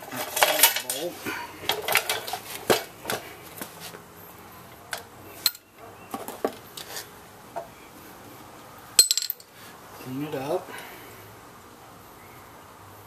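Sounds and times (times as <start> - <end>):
metal tools clinking: 0.0 - 1.1, 9.0 - 9.5.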